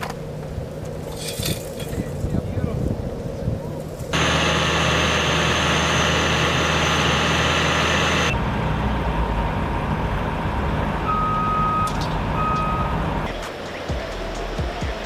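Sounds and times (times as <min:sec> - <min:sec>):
heavy construction vehicle engine: 0:04.1 - 0:15.0
reversing alarm beeps: 0:11.0 - 0:13.0.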